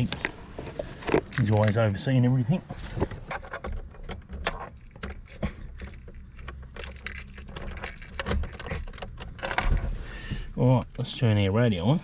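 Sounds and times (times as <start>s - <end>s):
car keys jangling: 3.2s - 10.0s.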